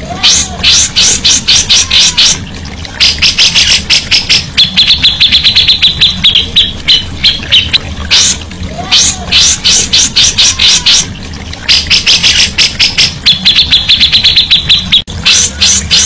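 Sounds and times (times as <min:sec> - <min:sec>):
songbird singing loudly: 0:03.0 - 0:11.0, 0:11.7 - 0:16.0.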